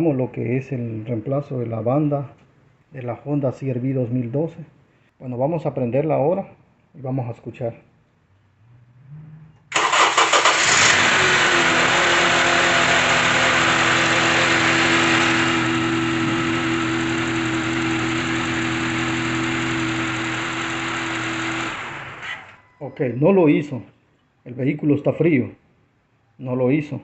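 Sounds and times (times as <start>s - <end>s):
car engine cranking and idling: 9.7s - 22.6s.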